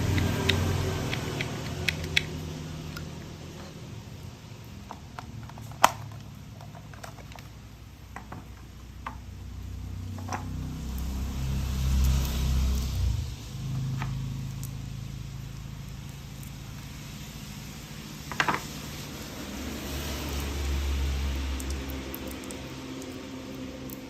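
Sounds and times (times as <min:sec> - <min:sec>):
toy parts clicking and tapping: 0:00.0 - 0:03.7, 0:04.8 - 0:07.5
low rumble with steady hum: 0:00.0 - 0:24.0.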